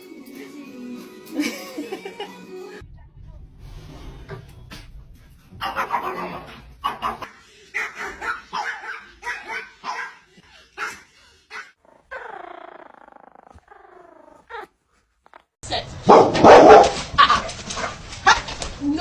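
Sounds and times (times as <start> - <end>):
dog barking: 5.6 - 11.8, 15.7 - 18.6.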